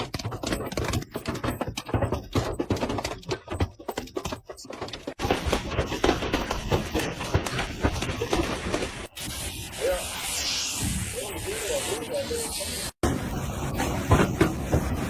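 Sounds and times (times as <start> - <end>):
hailstones striking hard surfaces: 5.1 - 9.1.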